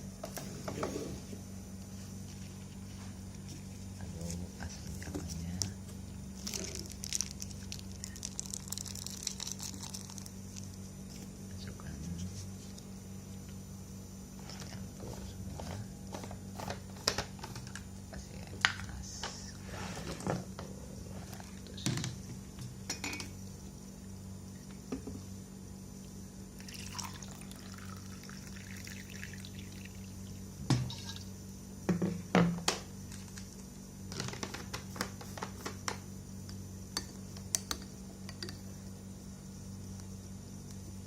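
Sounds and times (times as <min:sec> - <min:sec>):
low electrical hum: 0:00.0 - 0:41.0
kitchenware clinking: 0:22.9 - 0:23.4
liquid being poured: 0:26.6 - 0:31.2.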